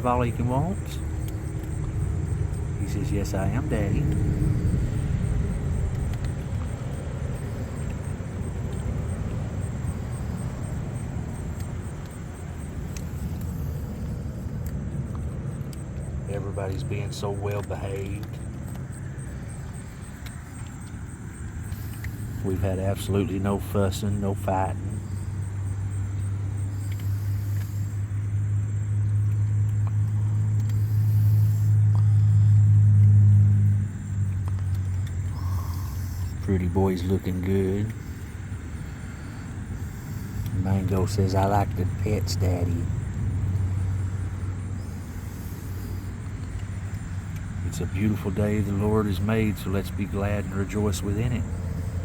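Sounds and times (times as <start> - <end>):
low engine-like hum: 0.0 - 52.0
steady low rumble: 0.0 - 52.0
faint ticks: 0.8 - 52.0
faint clicks: 4.0 - 22.4, 25.0 - 36.4.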